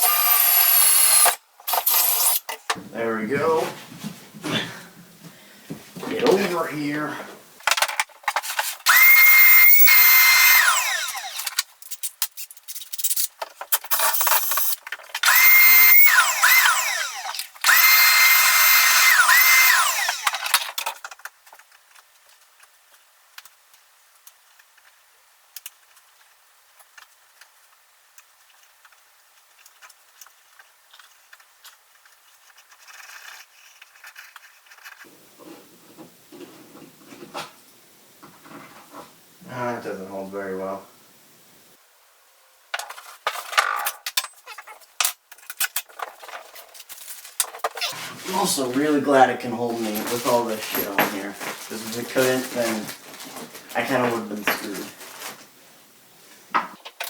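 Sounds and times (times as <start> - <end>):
power drill whining: 0.0 - 2.4, 8.9 - 11.6, 14.4 - 20.6.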